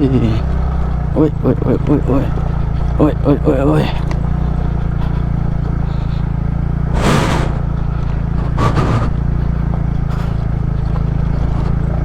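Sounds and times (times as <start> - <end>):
motorcycle engine running: 0.0 - 12.0
rushes of noise: 4.0 - 12.0.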